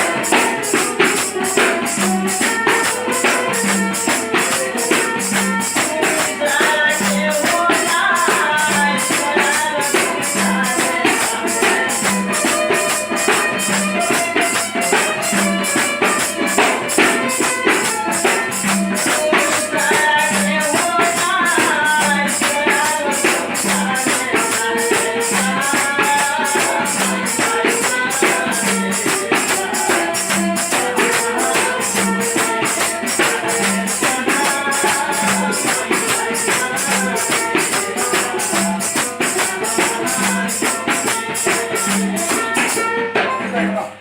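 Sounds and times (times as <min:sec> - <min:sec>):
jingling percussion beat: 0:00.0 - 0:44.0.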